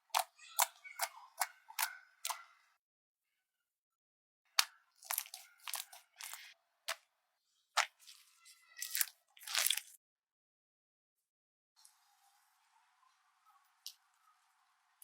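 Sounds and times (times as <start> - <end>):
slime squeezed by hand: 7.8 - 10.0.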